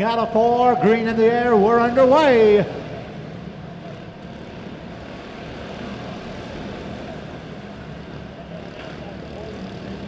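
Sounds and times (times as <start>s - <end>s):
small race car engines droning: 0.0s - 10.0s.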